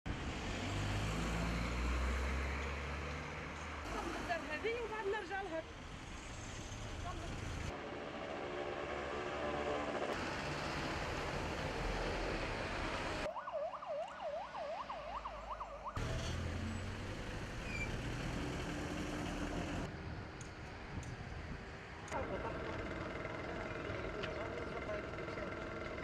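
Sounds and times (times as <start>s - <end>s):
street traffic: 0.1s - 26.0s
emergency siren yelping: 13.2s - 16.0s.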